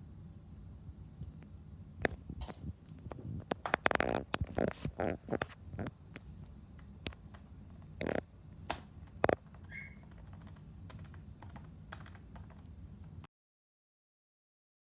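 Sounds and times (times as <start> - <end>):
membrane keyboard keys clicking: 6.8 - 13.2.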